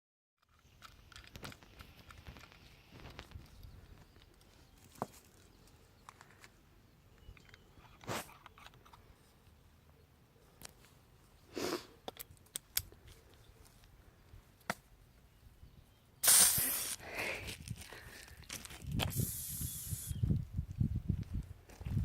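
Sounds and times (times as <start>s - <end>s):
sudden loud rustling hiss: 16.2s - 17.0s, 19.0s - 20.2s.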